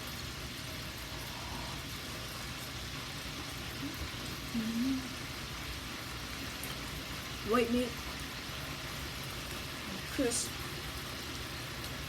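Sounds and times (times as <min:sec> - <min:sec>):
person humming: 0:03.8 - 0:05.2.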